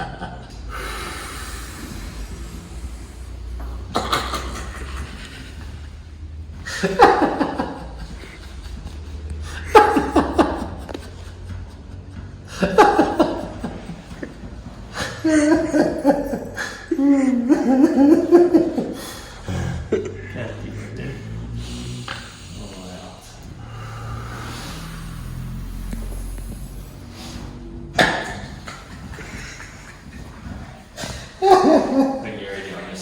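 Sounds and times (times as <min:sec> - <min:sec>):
person laughing: 0:03.9 - 0:06.0, 0:06.6 - 0:21.3, 0:28.0 - 0:32.4.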